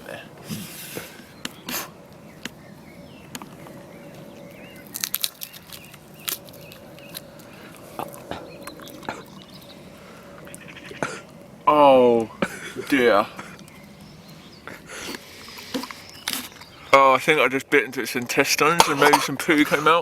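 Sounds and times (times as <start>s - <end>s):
person chewing raw meat: 4.4s - 11.4s.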